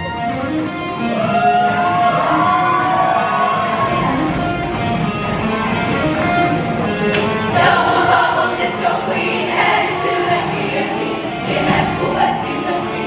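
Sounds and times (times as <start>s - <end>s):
women's choir singing: 7.4s - 13.0s.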